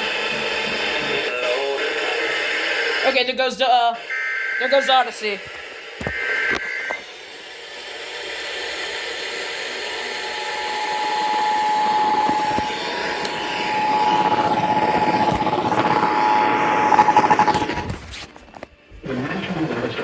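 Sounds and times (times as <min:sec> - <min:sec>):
radio static hiss: 0:00.0 - 0:20.0
steady attention tone: 0:03.9 - 0:07.0, 0:09.5 - 0:17.9.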